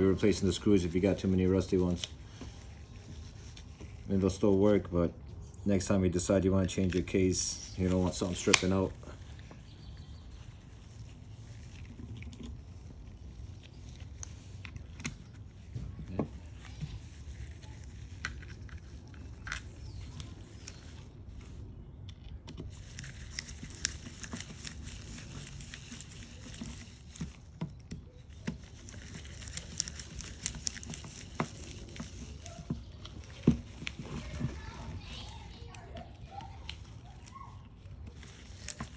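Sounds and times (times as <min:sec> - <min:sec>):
low background hum: 0:00.0 - 0:38.9
small plastic clicks and ticks: 0:08.1 - 0:38.9.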